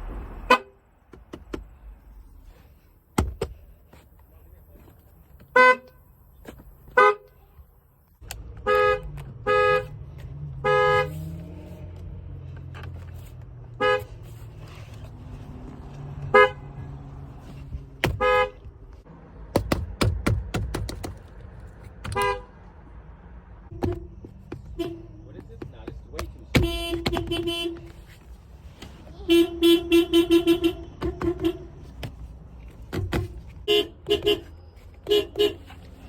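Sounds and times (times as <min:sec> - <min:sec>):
low rumble: 0:00.0 - 0:00.5
car horn honking: 0:00.3 - 0:00.8, 0:05.5 - 0:06.1, 0:06.9 - 0:07.5, 0:08.5 - 0:11.7, 0:13.7 - 0:14.5, 0:16.2 - 0:17.0, 0:18.0 - 0:18.8, 0:22.0 - 0:22.7, 0:23.7 - 0:25.4, 0:26.4 - 0:28.1, 0:29.1 - 0:31.9, 0:33.6 - 0:35.8.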